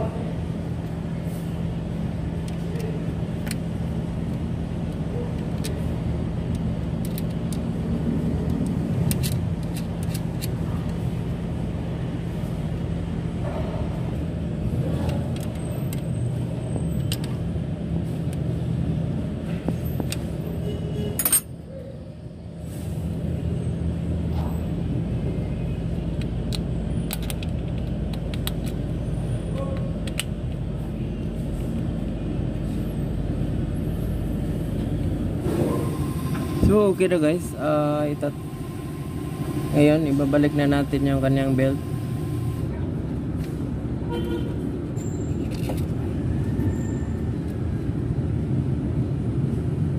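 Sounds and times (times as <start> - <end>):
low mechanical hum: 0.0 - 49.9.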